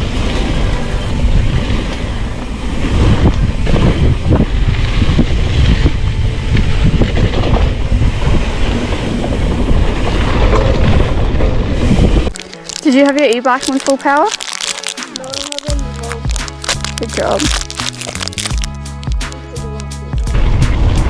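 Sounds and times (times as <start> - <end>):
wind buffeting: 0.0 - 14.2.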